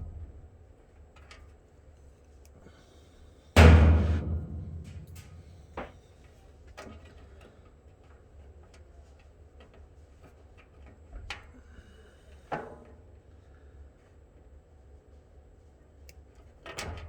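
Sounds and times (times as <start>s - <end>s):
low steady hum: 3.6s - 5.8s.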